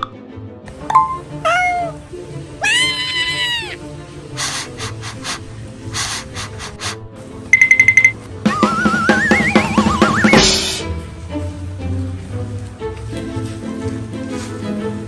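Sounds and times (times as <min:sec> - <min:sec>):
background music: 0:00.0 - 0:15.0
cartoon animal vocal effects: 0:00.9 - 0:02.0, 0:02.6 - 0:03.8.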